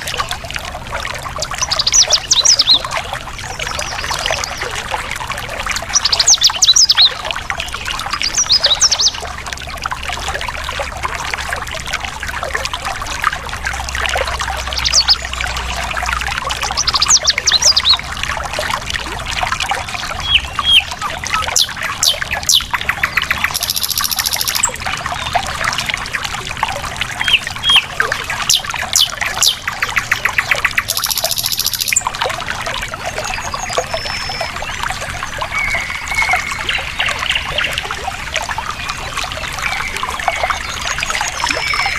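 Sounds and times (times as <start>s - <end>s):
stream water over rocks: 0.0s - 41.9s
birds chirping: 1.6s - 5.0s, 5.8s - 9.3s, 14.4s - 18.0s, 19.7s - 25.5s, 27.2s - 32.2s
buzzy trills: 23.0s - 24.7s.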